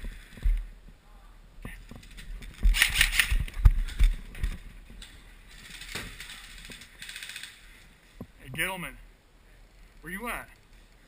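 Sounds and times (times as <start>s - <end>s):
rustling movement: 1.7s - 11.0s
airsoft gun firing full auto: 2.7s - 3.4s.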